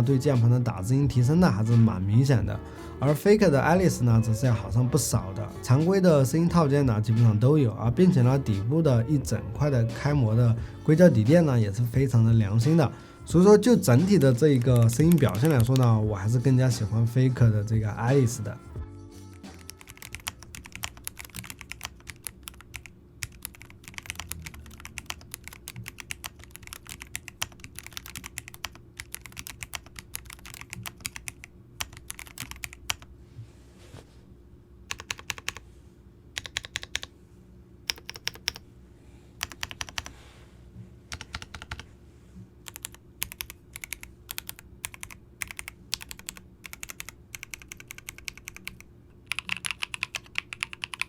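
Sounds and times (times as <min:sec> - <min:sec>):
mechanical keyboard typing: 0:14.2 - 0:15.9, 0:19.4 - 0:33.1, 0:34.9 - 0:35.6, 0:36.4 - 0:37.1, 0:37.9 - 0:38.6, 0:39.4 - 0:40.1, 0:41.1 - 0:41.8, 0:42.6 - 0:51.0.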